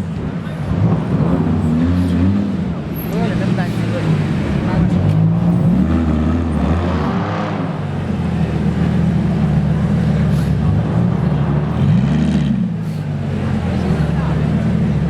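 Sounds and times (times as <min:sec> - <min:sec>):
engine revving: 0:00.0 - 0:15.0
sports car engine idling: 0:07.6 - 0:15.0.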